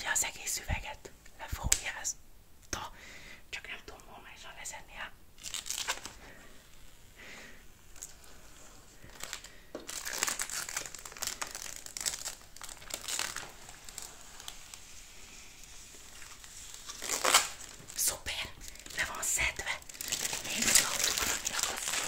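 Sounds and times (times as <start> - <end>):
packaging material crinkling: 5.4 - 7.1, 7.8 - 22.0.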